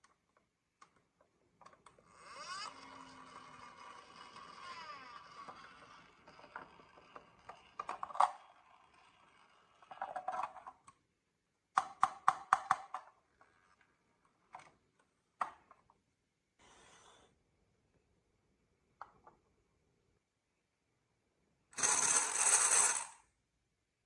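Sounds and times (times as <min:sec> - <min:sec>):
marbles clattering down a run: 0:21.8 - 0:23.2.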